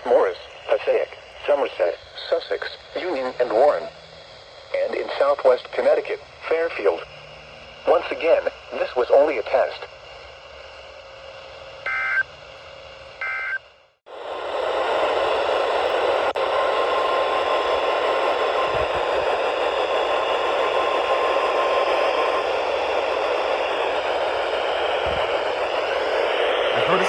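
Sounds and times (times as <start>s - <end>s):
loud radio static: 0.0s - 10.0s, 23.3s - 27.0s
faint steady alarm tone: 11.8s - 12.3s, 13.2s - 13.7s.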